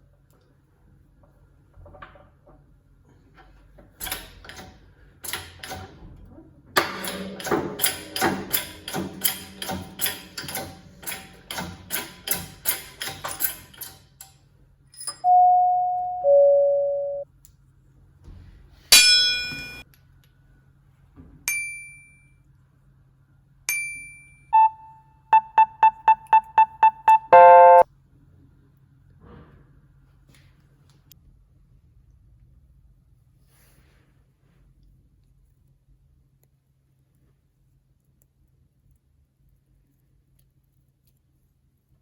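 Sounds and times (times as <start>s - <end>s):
high electronic pings: 15.2s - 17.2s, 24.6s - 27.8s
quick beeps: 15.2s - 17.2s, 24.6s - 27.8s
two-note falling chime: 15.2s - 17.2s, 24.6s - 27.8s.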